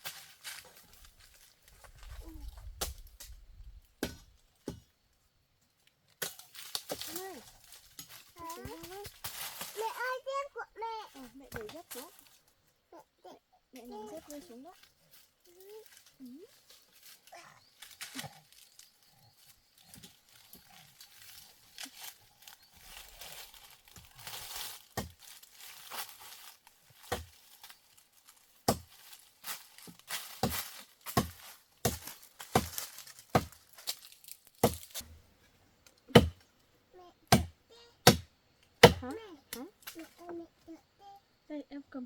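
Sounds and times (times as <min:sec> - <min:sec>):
leaves and branches rustling: 0:00.0 - 0:04.6, 0:05.6 - 0:37.2, 0:38.0 - 0:42.0
blade chopping into tree: 0:28.7 - 0:29.1, 0:30.1 - 0:34.0, 0:34.6 - 0:35.0, 0:36.1 - 0:36.4, 0:37.3 - 0:39.1.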